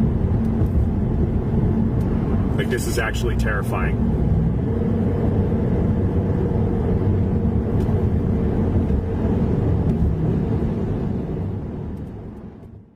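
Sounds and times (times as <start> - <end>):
car road and engine noise: 0.0 - 12.9.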